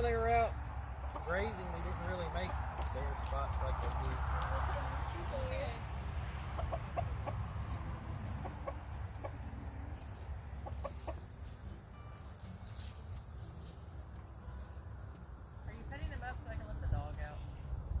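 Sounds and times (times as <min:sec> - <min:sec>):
hens clucking softly: 0:06.3 - 0:11.3.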